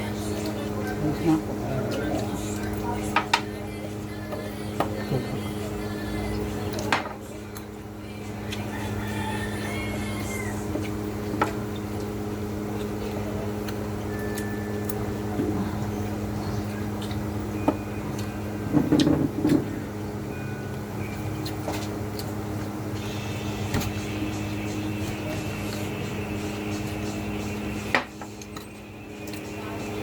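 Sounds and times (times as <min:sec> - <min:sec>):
motor-like hum: 0:00.0 - 0:30.0
person eating and chewing: 0:08.3 - 0:19.8, 0:21.0 - 0:27.3.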